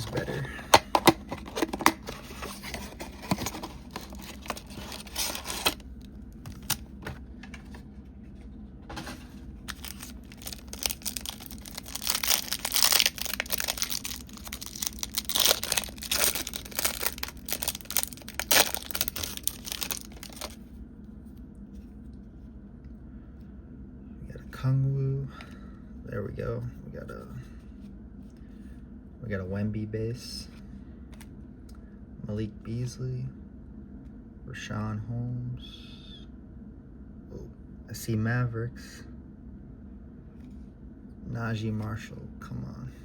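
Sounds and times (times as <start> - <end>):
cardboard tearing: 0.0 - 5.8, 9.7 - 20.6
plastic wrapping crinkling: 0.0 - 5.8, 9.7 - 20.6.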